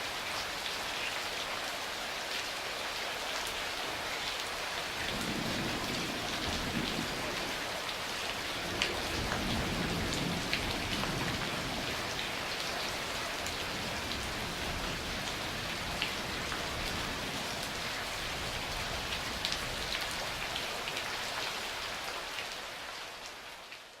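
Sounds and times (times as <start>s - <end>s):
rain falling: 0.0s - 24.0s
low thunder rumble: 5.0s - 7.7s, 8.6s - 12.4s.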